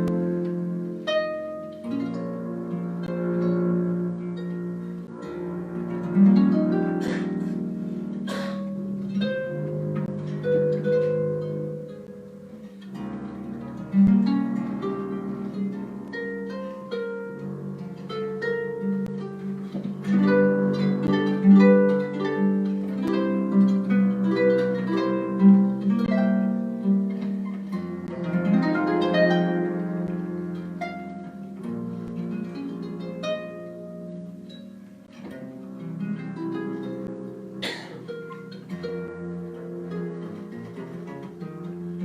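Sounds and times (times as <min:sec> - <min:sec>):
harp plucked notes: 0:00.0 - 0:42.0
other plucked strings: 0:00.0 - 0:42.0.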